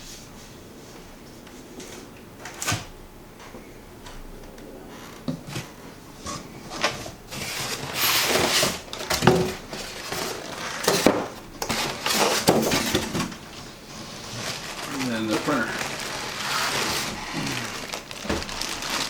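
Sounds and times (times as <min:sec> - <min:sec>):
items knocking and clunking: 0:05.2 - 0:13.8, 0:14.4 - 0:19.0
packaging rustling: 0:05.6 - 0:19.0.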